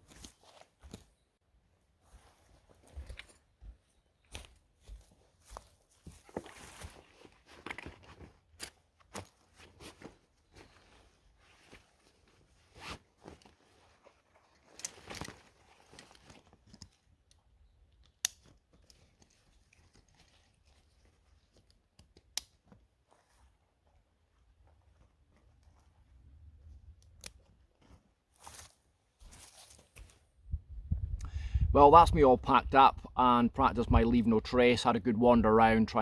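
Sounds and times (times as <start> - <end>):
rustling and crinkling of gear: 0.0 - 30.4.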